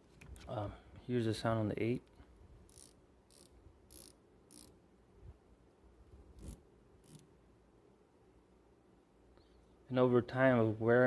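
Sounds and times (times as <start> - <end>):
ratcheting wrench clicking: 2.7 - 4.7.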